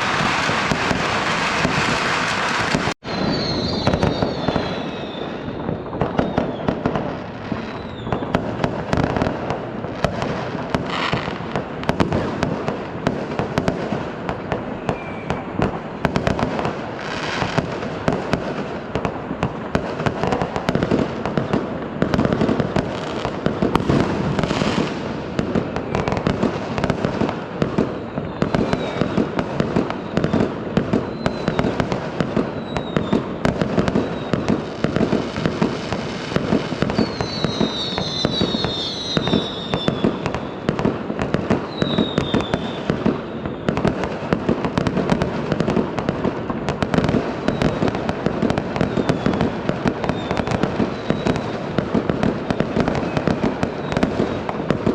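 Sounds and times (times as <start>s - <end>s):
rising firework whoosh: 0.0s - 12.3s
fireworks crackling bangs: 0.0s - 54.9s.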